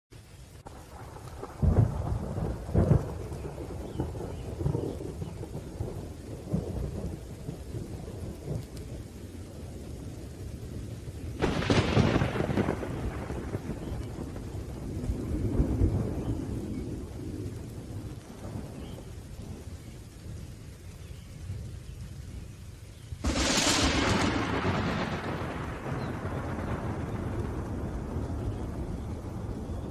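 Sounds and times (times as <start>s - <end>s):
faint rain hiss: 0.1s - 29.9s
sharp thunderclap: 0.6s - 8.7s, 11.4s - 19.6s, 23.2s - 29.9s
rolling thunder: 0.6s - 22.4s, 23.1s - 29.9s.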